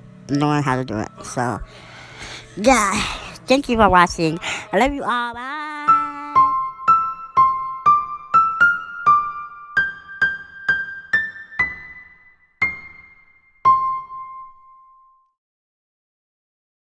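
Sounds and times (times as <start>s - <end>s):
electric keyboard melody: 3.6s - 15.1s.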